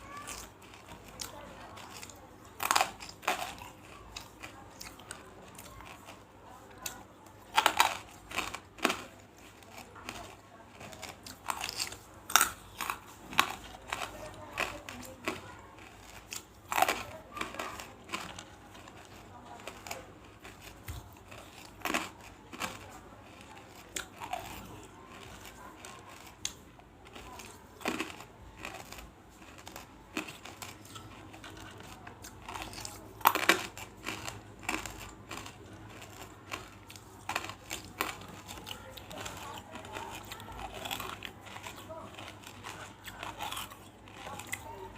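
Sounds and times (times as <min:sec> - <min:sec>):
brittle pieces crunched in mouth: 0:00.2 - 0:44.9.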